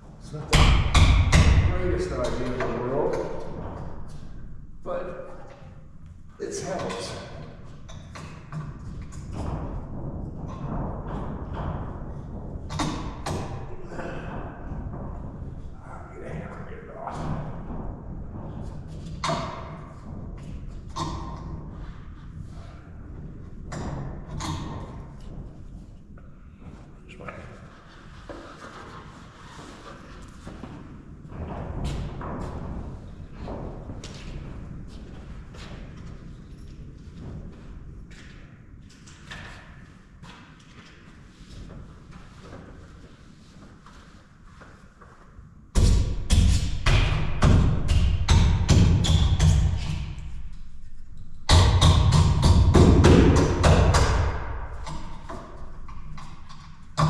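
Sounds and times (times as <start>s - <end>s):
steady low rumble: 0.0s - 8.0s, 8.8s - 39.0s
knocks and thuds: 6.7s - 26.9s, 28.2s - 38.3s, 45.8s - 50.4s, 51.5s - 57.0s.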